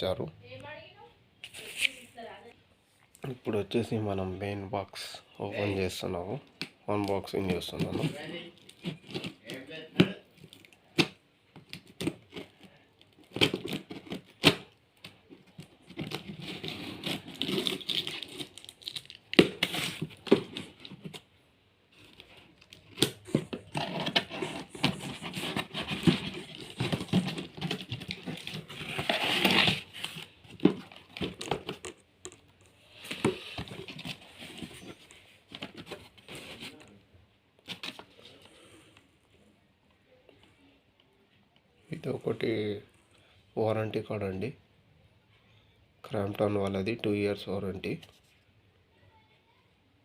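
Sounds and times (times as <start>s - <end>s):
cardboard tearing and rustling: 15.5s - 21.2s, 22.0s - 31.9s.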